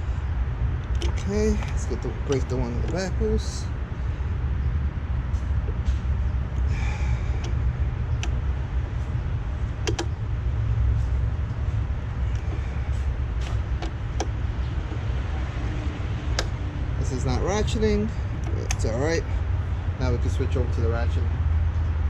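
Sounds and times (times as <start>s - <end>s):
steady low rumble: 0.0s - 22.0s
metallic clicks of breaker bar: 0.8s - 3.1s, 9.8s - 10.2s.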